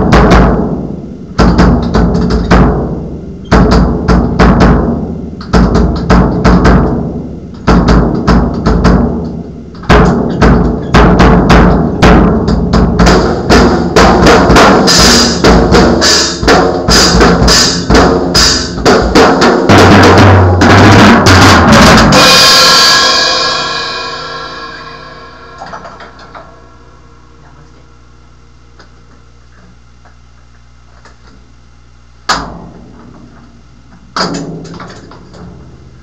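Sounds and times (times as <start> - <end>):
drum kit playing: 0.0 - 27.3
cymbal crash: 13.0 - 27.2.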